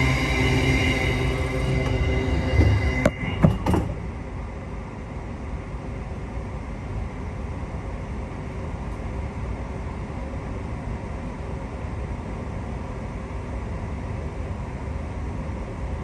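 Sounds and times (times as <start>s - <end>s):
door warning tone: 0.0s - 4.1s
low rumble inside train carriage: 0.0s - 16.0s
train doors knocking shut: 1.7s - 4.0s.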